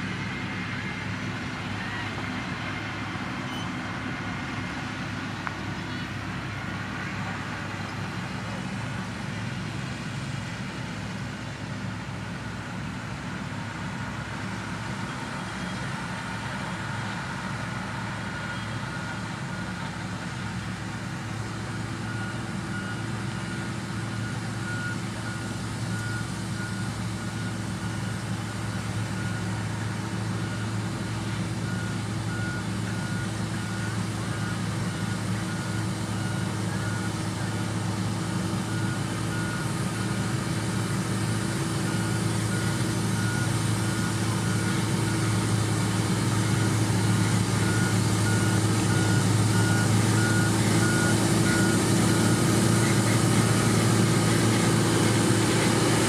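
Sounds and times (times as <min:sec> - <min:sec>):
diesel engine running: 0:00.0 - 0:56.0
reversing alarm beeping: 0:31.6 - 0:37.6, 0:38.4 - 0:40.4, 0:41.8 - 0:56.0.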